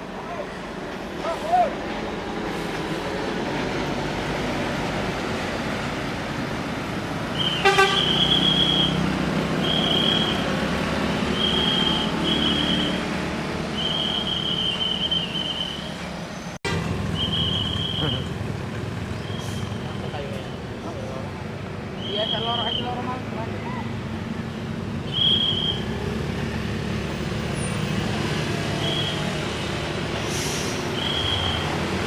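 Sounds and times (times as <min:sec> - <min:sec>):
bus engine running: 0:00.0 - 0:22.0
high bus horn toots: 0:07.4 - 0:08.9
low horn blast: 0:07.6 - 0:08.2.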